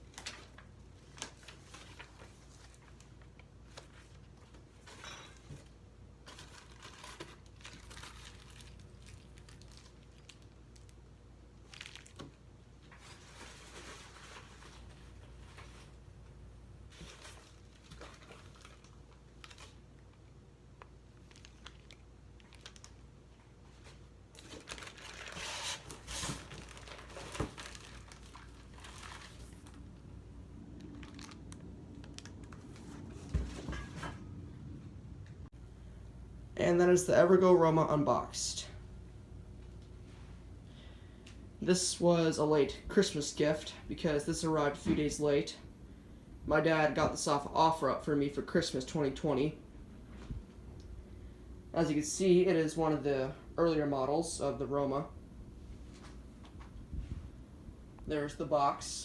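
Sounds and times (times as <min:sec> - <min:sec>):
packaging crinkling and rustling: 0:00.0 - 0:16.0, 0:16.8 - 0:33.8.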